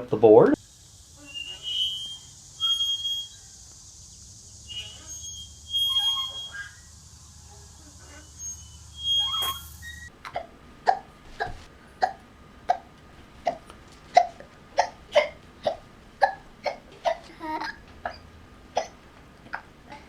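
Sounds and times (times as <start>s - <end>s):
child hiccuping: 10.3s - 18.2s, 18.8s - 20.0s.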